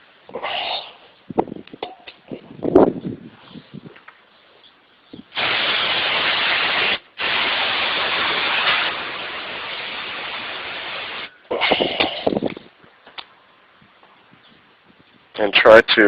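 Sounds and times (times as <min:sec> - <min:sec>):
aerosol can spraying: 0:05.4 - 0:11.3.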